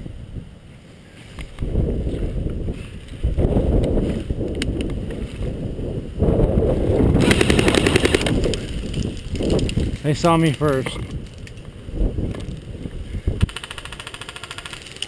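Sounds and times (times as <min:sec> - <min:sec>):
wind rumble on microphone: 0:00.0 - 0:13.6
rapid airsoft gunfire: 0:07.2 - 0:08.6, 0:13.4 - 0:15.0.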